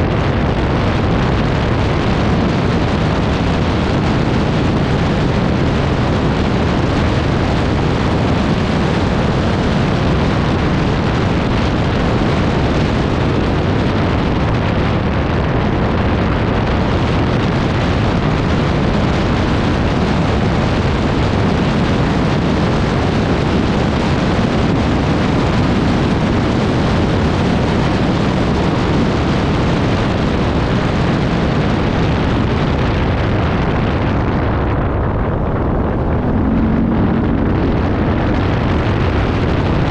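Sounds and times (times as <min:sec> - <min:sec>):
loud rushing noise: 0:33.4 - 0:39.9
atv engine running: 0:34.0 - 0:39.9.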